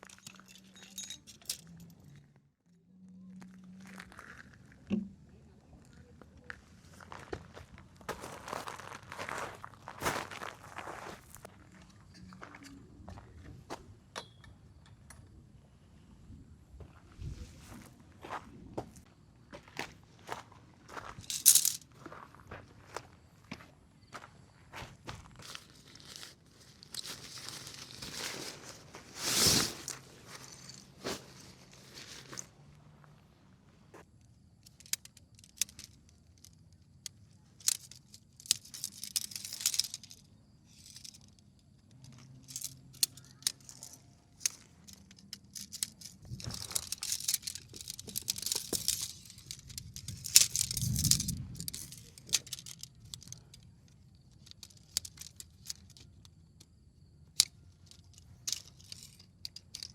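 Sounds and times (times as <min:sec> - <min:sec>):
packaging rustling and crinkling: 0:25.5 - 0:32.5.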